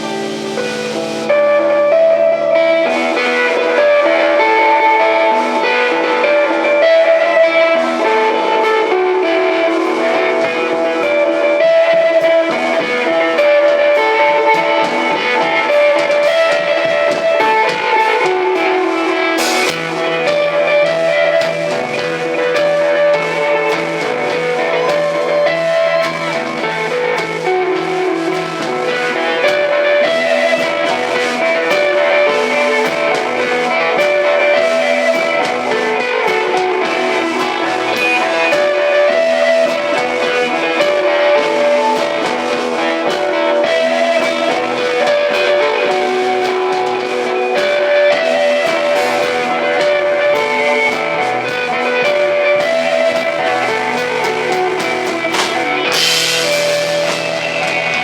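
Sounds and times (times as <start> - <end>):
drums: 0.0 - 58.0
electric guitar long notes: 0.0 - 58.0.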